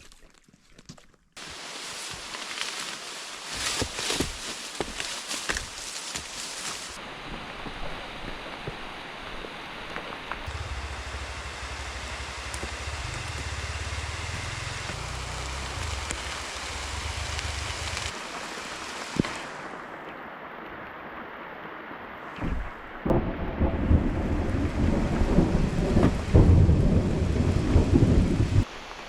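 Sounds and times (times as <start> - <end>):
steady rain: 1.4 - 29.0
low rumble: 10.4 - 18.2, 23.1 - 28.6.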